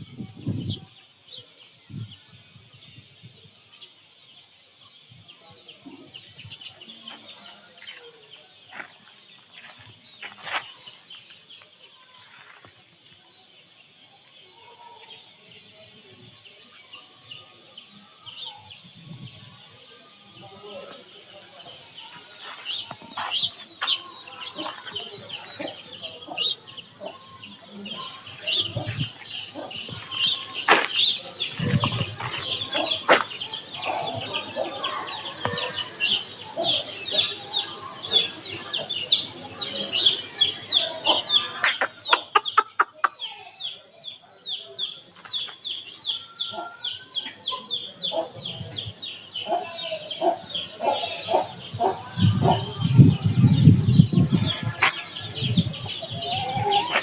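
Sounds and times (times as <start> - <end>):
chickens clucking: 20.4 - 43.3, 45.2 - 57.0.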